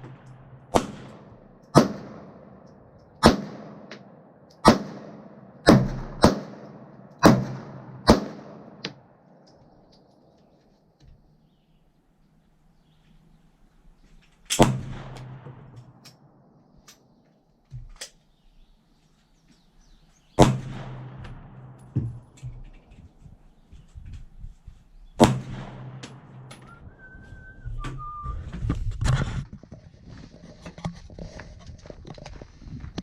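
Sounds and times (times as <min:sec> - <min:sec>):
loud pistol shots: 0:00.0 - 0:02.6, 0:03.2 - 0:09.1, 0:14.5 - 0:16.0, 0:20.4 - 0:22.0, 0:25.2 - 0:26.8
distant gunfire pops: 0:00.0 - 0:09.6, 0:14.5 - 0:16.3, 0:20.4 - 0:22.6, 0:25.2 - 0:27.0
two-note whistle-like tone: 0:26.6 - 0:28.5
rustling: 0:26.6 - 0:33.0.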